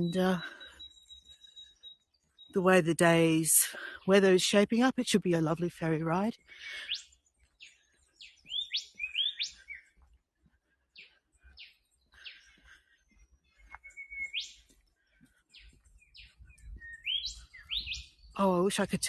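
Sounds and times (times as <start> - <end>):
birds whistling calls: 6.6 - 10.0, 11.0 - 14.9, 15.5 - 18.4.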